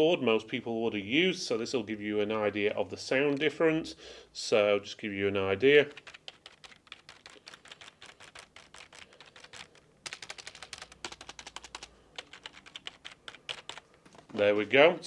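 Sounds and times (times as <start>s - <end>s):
keyboard typing clicks: 6.0s - 14.2s.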